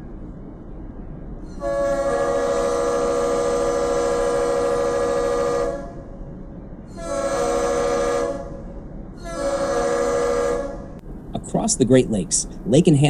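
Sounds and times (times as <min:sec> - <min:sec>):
loud horn blasts: 0:01.7 - 0:06.0, 0:07.0 - 0:08.5, 0:09.3 - 0:10.8.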